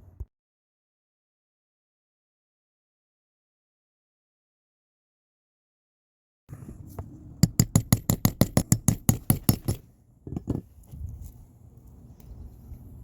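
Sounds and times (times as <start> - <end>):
sharp knocks: 7.4 - 10.6.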